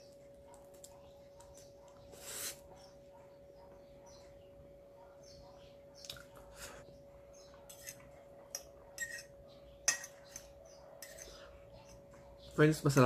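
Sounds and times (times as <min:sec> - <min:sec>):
utensil clinking against a bowl: 0:07.7 - 0:12.1.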